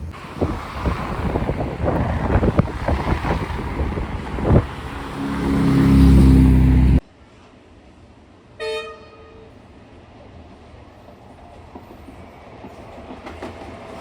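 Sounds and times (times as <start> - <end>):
wind buffeting microphone: 0.0 - 7.0
long low horn blast: 2.3 - 7.0, 8.6 - 9.5.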